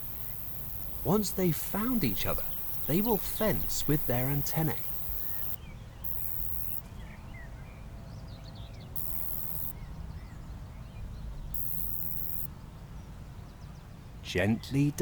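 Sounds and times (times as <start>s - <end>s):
cricket high-pitched buzzing: 0.0s - 6.8s, 9.0s - 9.7s, 11.6s - 12.5s
faint chirps: 0.0s - 6.8s, 9.0s - 9.8s.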